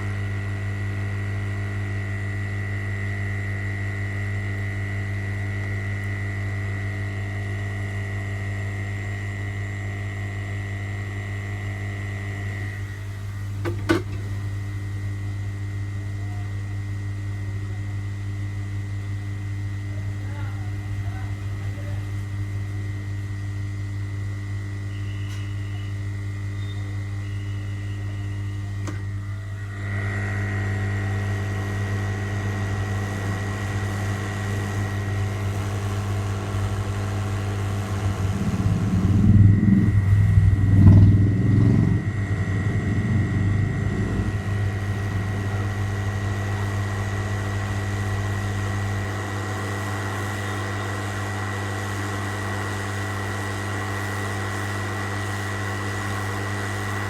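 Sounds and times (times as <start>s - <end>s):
machine hum: 0.0s - 57.0s
thin high whine: 23.6s - 57.0s.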